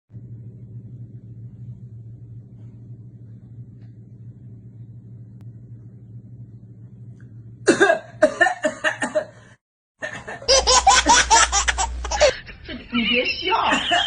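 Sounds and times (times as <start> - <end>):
people laughing hard: 10.0 - 12.9, 13.6 - 14.0.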